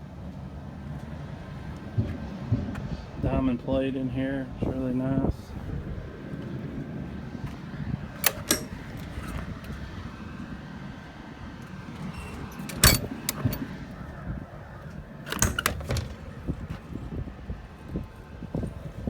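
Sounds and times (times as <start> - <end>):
metal clanks and rattles: 8.1 - 9.4, 11.8 - 13.8, 15.3 - 16.4.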